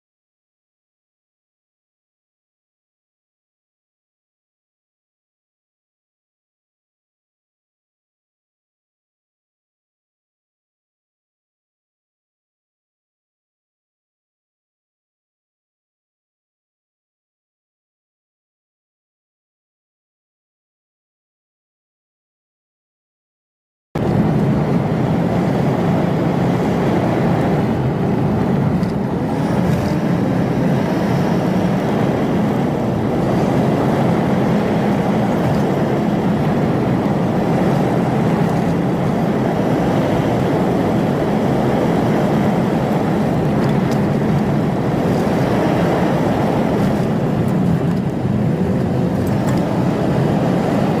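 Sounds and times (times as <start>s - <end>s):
heavy machine drone: 24.0s - 51.0s.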